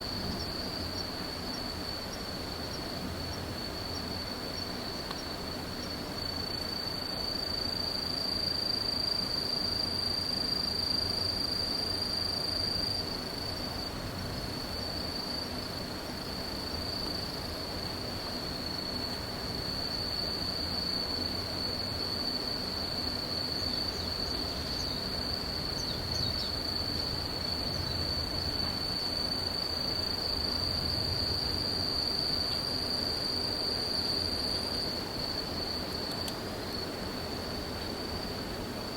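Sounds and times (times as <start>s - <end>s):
crickets chirping: 0.0s - 38.9s.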